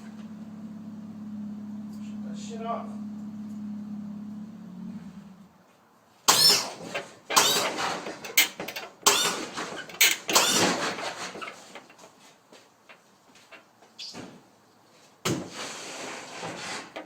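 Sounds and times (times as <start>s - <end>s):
hydraulic pump motors whining: 6.3s - 12.2s.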